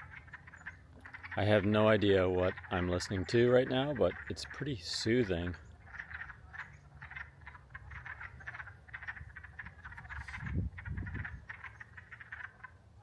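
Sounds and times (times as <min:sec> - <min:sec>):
frogs calling: 0:00.0 - 0:13.0.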